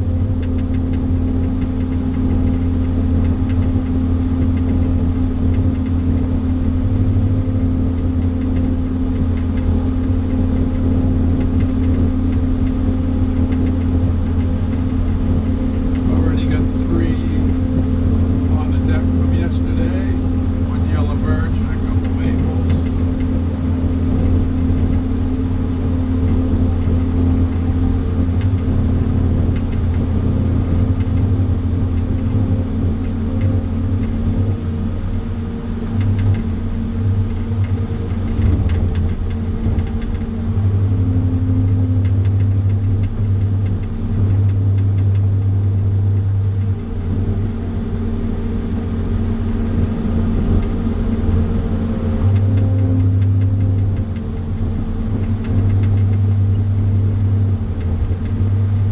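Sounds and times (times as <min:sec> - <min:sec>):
machinery engine humming: 0:00.0 - 0:58.9.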